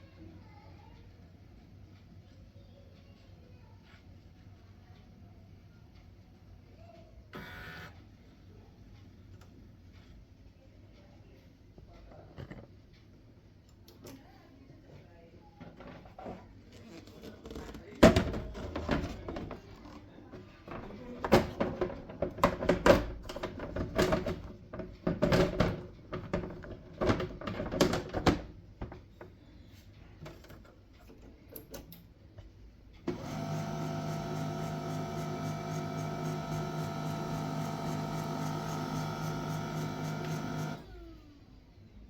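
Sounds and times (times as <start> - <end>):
printer motors whirring: 7.3 - 7.9, 33.1 - 41.4.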